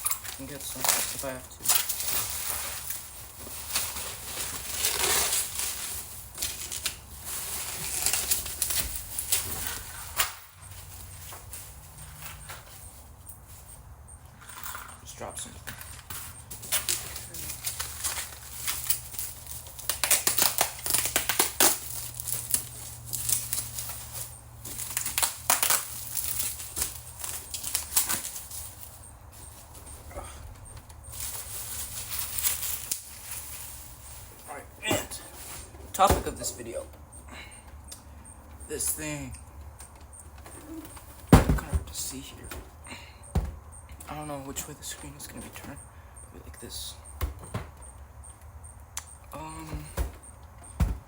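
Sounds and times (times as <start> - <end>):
packing material rustling: 0.0 - 10.2, 16.6 - 30.0, 31.0 - 36.1.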